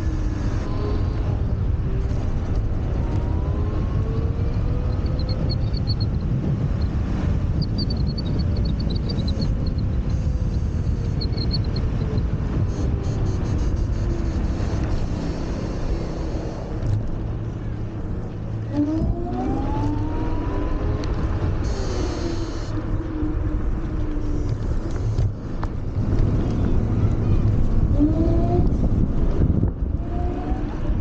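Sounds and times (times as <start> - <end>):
wind and road rumble: 0.0 - 31.0
electric scooter motor whine: 18.7 - 28.9.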